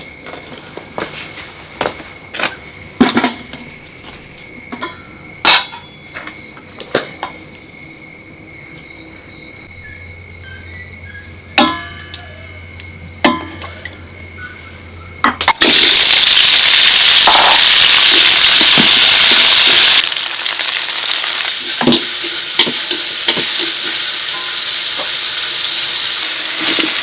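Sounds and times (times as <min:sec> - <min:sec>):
dishes and utensils clinking: 0:04.7 - 0:06.4, 0:11.6 - 0:12.3, 0:13.2 - 0:14.0.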